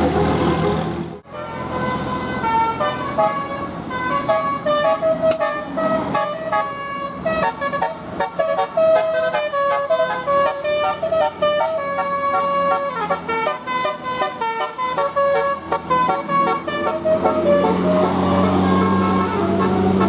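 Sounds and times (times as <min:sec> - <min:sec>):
musical air horns playing tune: 0:00.1 - 0:20.0.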